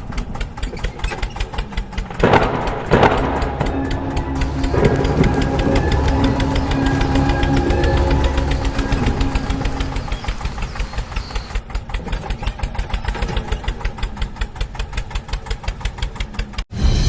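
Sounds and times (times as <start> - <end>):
diesel engine chugging: 4.4 - 11.6.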